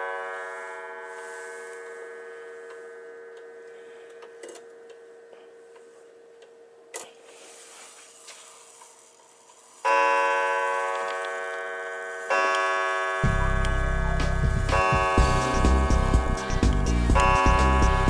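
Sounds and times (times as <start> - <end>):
wall clock ticking: 9.9 - 18.0
clock gong striking: 10.0 - 18.0
low rumble: 13.2 - 18.0.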